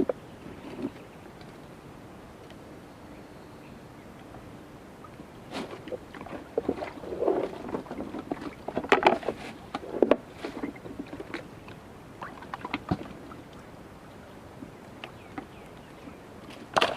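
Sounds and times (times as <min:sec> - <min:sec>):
water splashing: 0:05.0 - 0:11.5, 0:12.1 - 0:13.8, 0:14.7 - 0:16.9.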